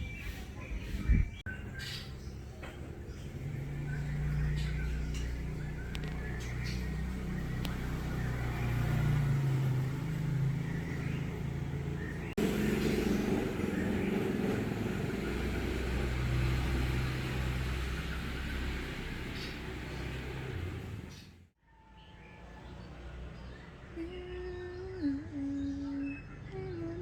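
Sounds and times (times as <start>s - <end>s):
vehicle engine rumbling: 0.0s - 21.6s.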